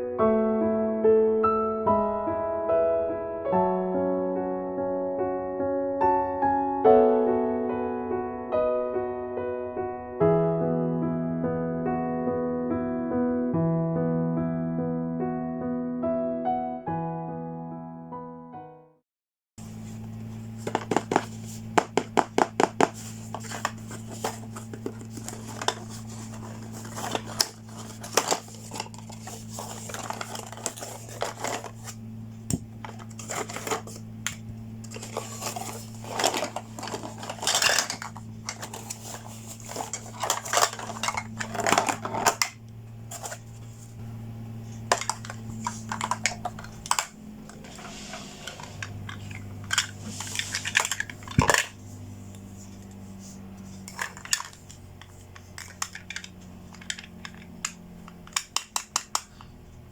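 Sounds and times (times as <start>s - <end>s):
steady low hum: 19.6s - 59.9s
plastic toy pieces clattering: 20.6s - 32.0s, 32.8s - 34.0s, 34.8s - 43.4s, 44.9s - 47.1s, 48.4s - 51.8s, 53.8s - 57.5s, 58.2s - 59.4s.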